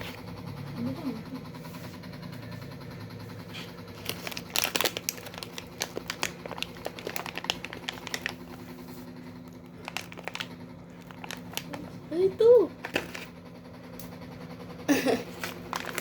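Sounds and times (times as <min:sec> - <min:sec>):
plastic packet crinkling: 0:03.9 - 0:08.8, 0:09.5 - 0:12.0, 0:12.8 - 0:13.3, 0:15.3 - 0:16.0.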